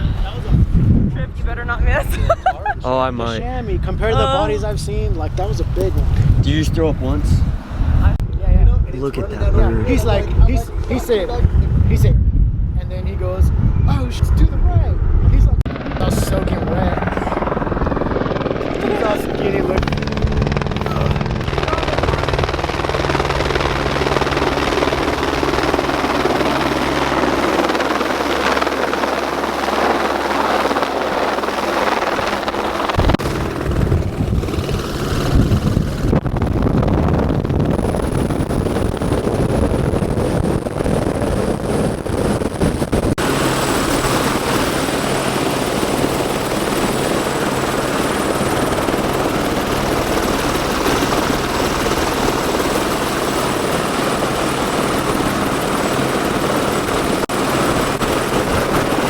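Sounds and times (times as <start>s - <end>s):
helicopter rotor and engine: 0.0s - 12.1s, 12.8s - 59.0s.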